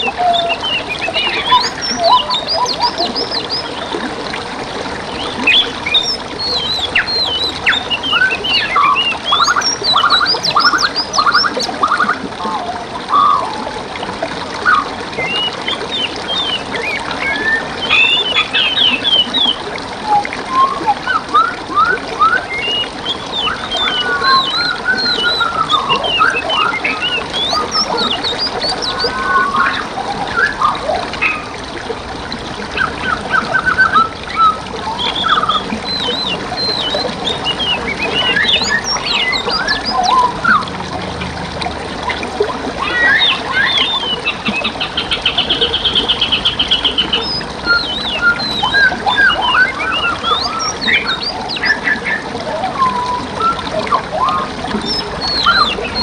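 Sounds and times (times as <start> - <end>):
buzzy bird trill: 0.0 - 4.0, 5.1 - 12.0, 14.7 - 19.6, 21.9 - 31.6, 32.5 - 40.3, 42.8 - 52.2, 54.3 - 56.0
songbirds singing and chirping: 0.0 - 13.8, 14.6 - 40.8, 42.0 - 56.0
trickle of flowing water: 0.0 - 56.0.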